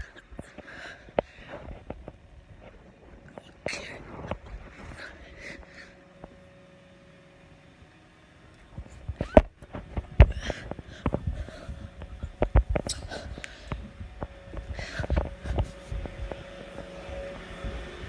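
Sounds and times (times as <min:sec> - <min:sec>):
breathy rustles: 0:00.0 - 0:06.8, 0:08.7 - 0:18.0
footsteps and knocks: 0:08.7 - 0:18.0.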